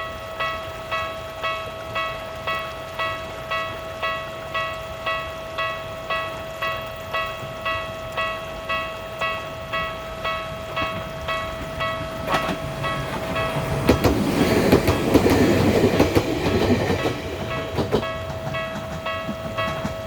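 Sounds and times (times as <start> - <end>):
crossing warning bell ringing: 0.0 - 20.0
train wheels clacking over rail joints: 0.9 - 20.0.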